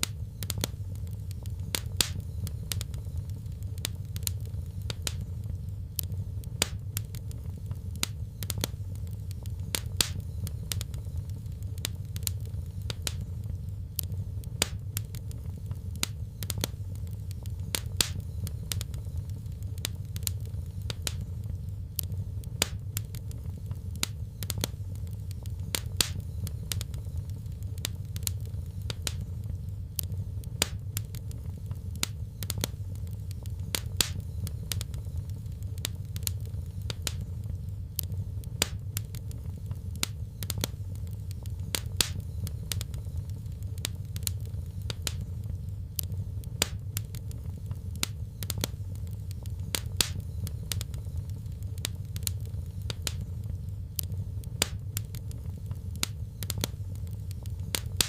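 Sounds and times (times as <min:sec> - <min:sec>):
fire crackling and popping: 0:00.0 - 0:58.0
steady low rumble: 0:00.0 - 0:58.0.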